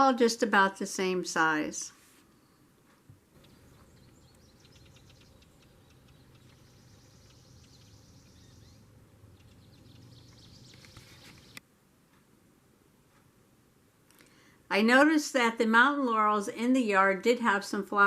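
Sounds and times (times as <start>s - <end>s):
small birds chirping: 2.3s - 11.6s
low steady hum: 2.3s - 16.7s.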